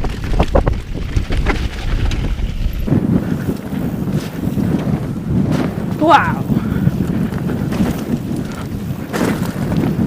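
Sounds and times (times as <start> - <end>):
bike knocking over rough ground: 0.0 - 6.0, 6.9 - 10.0
low rumble of bike: 0.0 - 10.0
wind buffeting the microphone: 0.0 - 10.0.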